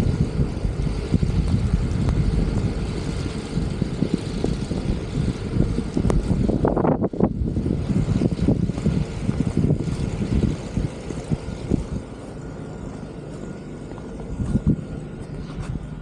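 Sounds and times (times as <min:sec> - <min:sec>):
traffic rumble: 0:00.0 - 0:16.0
wind gusting on microphone: 0:00.0 - 0:16.0.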